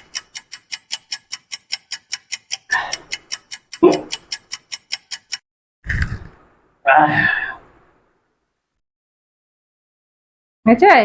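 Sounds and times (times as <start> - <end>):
fast clock ticking: 0.0 - 5.4.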